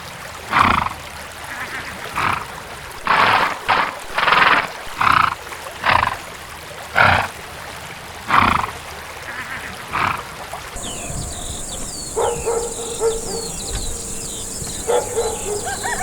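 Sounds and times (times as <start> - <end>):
bird chirps: 10.8 - 16.0
drawn-out animal call: 10.8 - 16.0
horse snorting: 10.8 - 16.0
insect buzzing: 10.8 - 16.0.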